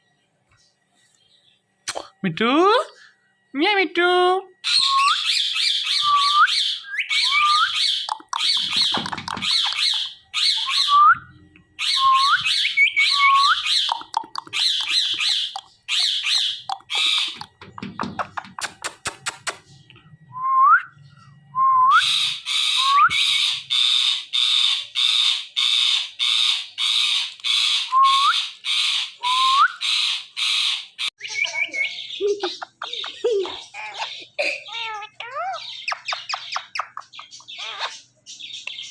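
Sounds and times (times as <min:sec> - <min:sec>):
parrots squawking: 0:04.6 - 0:11.2, 0:11.8 - 0:19.6, 0:22.0 - 0:38.9
quick clicks: 0:18.2 - 0:19.7.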